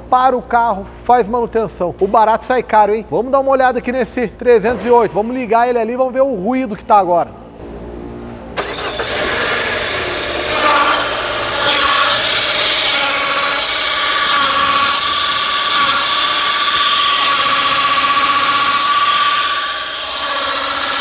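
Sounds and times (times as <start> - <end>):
clutch grinding and rubbing: 8.6 - 12.8.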